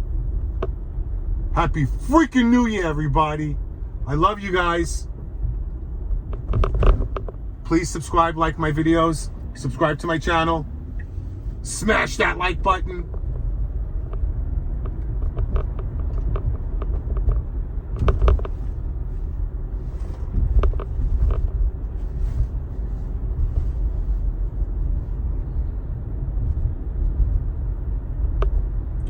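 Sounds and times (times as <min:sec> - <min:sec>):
road and tyre rumble in car: 0:00.0 - 0:29.0.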